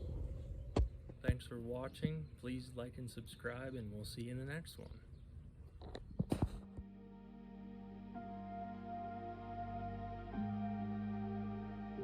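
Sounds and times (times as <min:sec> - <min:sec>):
ambient music: 0:06.8 - 0:12.0.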